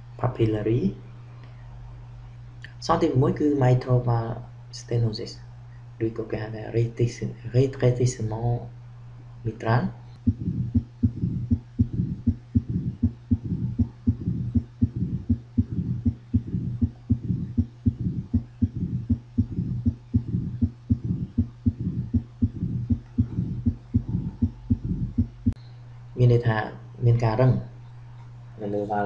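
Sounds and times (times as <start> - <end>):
steady low hum: 0.0 - 29.0
low-pitched heartbeats: 10.2 - 25.6.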